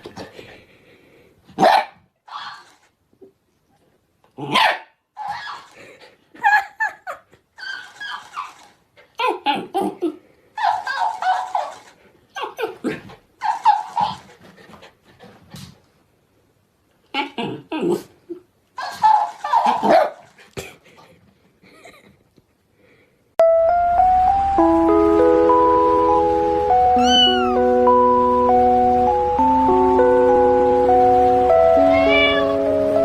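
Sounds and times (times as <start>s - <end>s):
dog barking: 1.6s - 2.6s, 4.5s - 5.6s, 10.6s - 11.8s, 18.8s - 20.3s.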